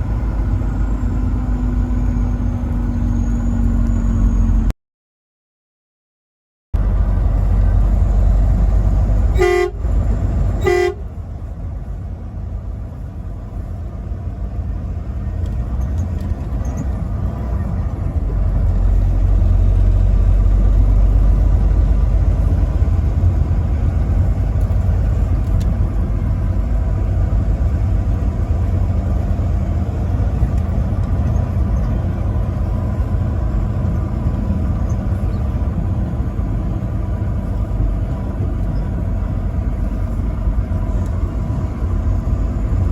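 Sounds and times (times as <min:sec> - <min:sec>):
truck engine rumble: 0:00.0 - 0:04.8, 0:06.8 - 0:42.9
truck horn toots: 0:09.2 - 0:11.2.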